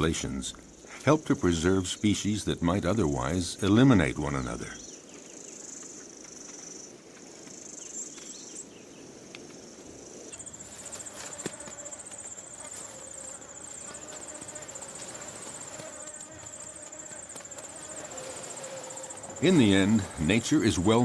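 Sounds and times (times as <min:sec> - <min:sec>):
insects buzzing: 0:00.0 - 0:21.0
insect pulsing high trill: 0:10.2 - 0:21.0.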